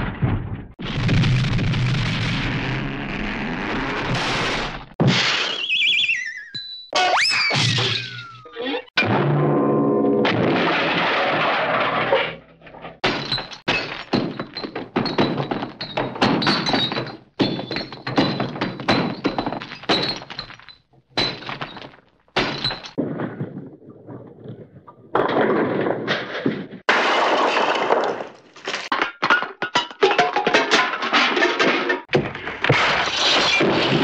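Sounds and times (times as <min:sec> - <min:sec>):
cartoon crash: 0:00.9 - 0:12.2
clattering and breaking: 0:10.2 - 0:34.0.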